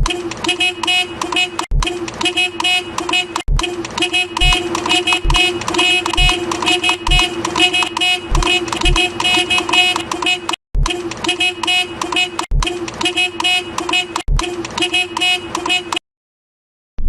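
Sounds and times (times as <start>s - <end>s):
bus musical horn tooting: 0.1s - 16.0s
low thumps: 4.4s - 7.7s, 8.3s - 9.4s.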